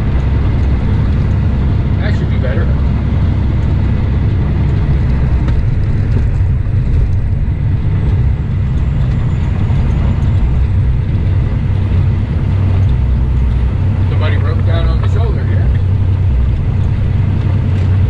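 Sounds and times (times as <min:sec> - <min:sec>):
truck engine and road noise: 0:00.0 - 0:18.0.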